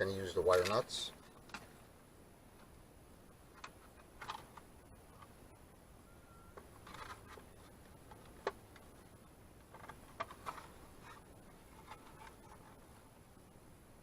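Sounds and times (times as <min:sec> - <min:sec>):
small handling clicks: 0:00.5 - 0:01.7.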